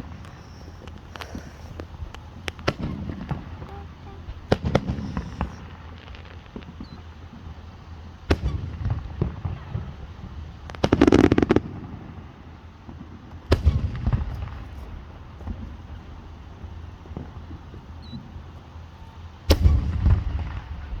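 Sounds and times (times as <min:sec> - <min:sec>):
small pops: 0:00.0 - 0:07.1
firework bangs: 0:00.0 - 0:21.0
firework crackling: 0:00.0 - 0:21.0.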